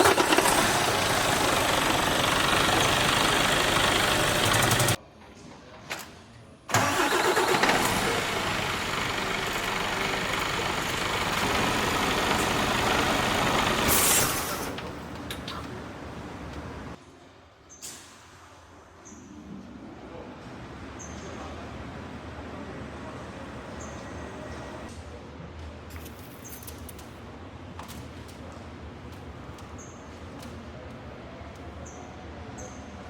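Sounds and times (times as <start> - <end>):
truck diesel engine running: 0.0 - 5.0, 6.7 - 15.0.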